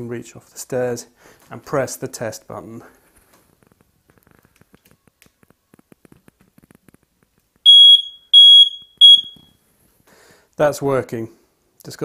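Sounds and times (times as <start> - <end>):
smoke alarm beeps: 7.6 - 9.6.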